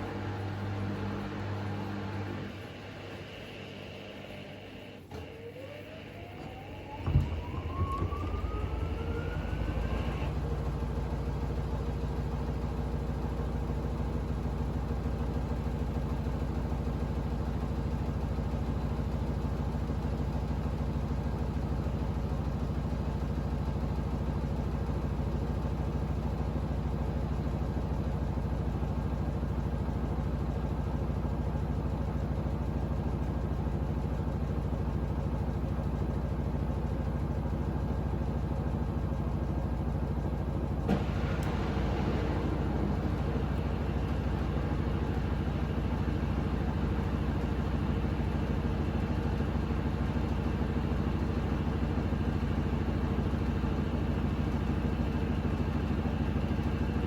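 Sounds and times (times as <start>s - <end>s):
washing machine motor whine: 0.0s - 57.0s
loud thump: 7.0s - 10.3s.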